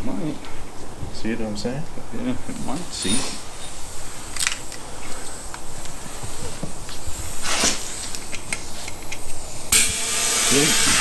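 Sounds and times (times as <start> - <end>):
air hissing: 2.4 - 11.0.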